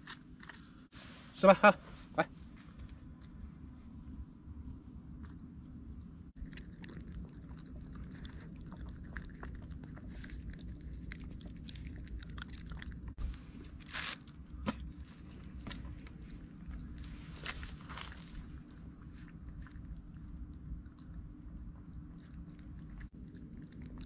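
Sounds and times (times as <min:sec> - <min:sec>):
low steady hum: 0:00.0 - 0:24.0
chewing and biting food: 0:04.9 - 0:24.0.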